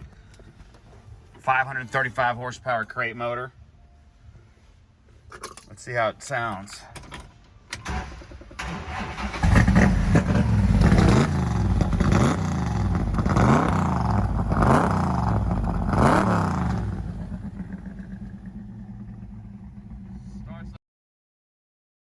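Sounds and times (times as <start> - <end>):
car engine revving and idling: 8.6 - 20.8.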